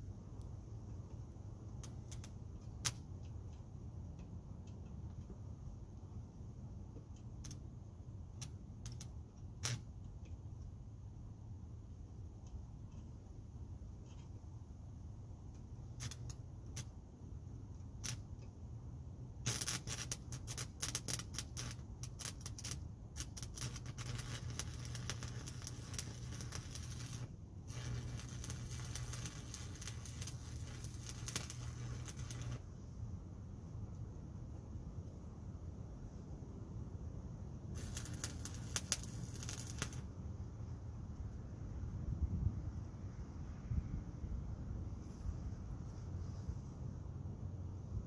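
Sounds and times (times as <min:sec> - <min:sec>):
crackling weld arc: 0:01.6 - 0:03.6, 0:07.2 - 0:10.3, 0:15.8 - 0:17.0, 0:17.7 - 0:18.5, 0:19.4 - 0:32.7, 0:37.7 - 0:40.1
steady low hum: 0:10.1 - 0:48.0.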